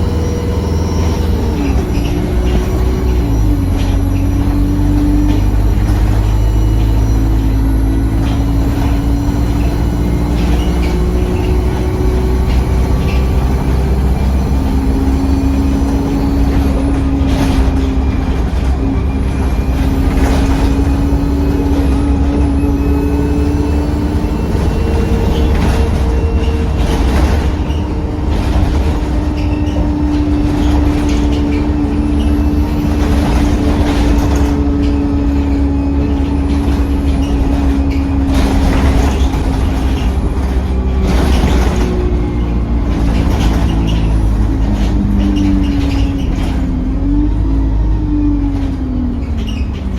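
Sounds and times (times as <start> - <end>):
bus engine rumble: 0.0 - 49.9
turbocharger whistle: 19.1 - 27.2.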